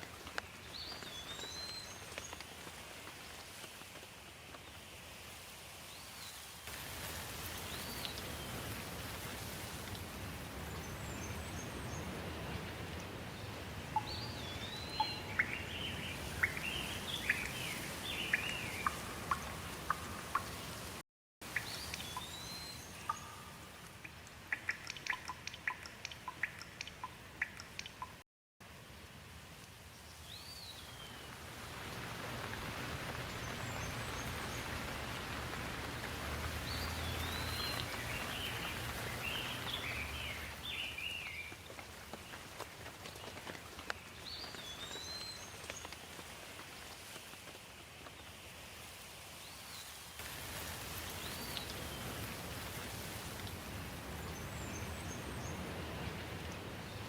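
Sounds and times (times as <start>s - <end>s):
steady rain: 0.0s - 57.0s
birds chirping: 13.3s - 20.8s, 36.6s - 41.5s
sharp drips: 13.9s - 28.2s, 32.1s - 46.3s.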